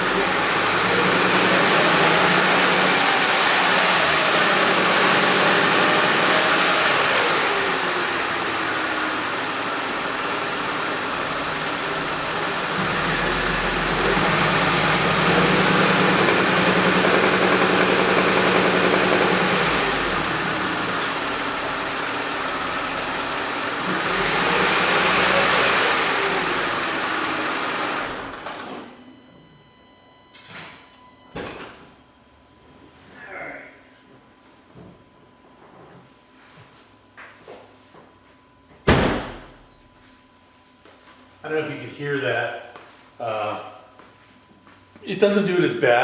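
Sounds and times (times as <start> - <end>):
car engine revving: 0.0 - 28.4
engine knocking: 0.2 - 22.2.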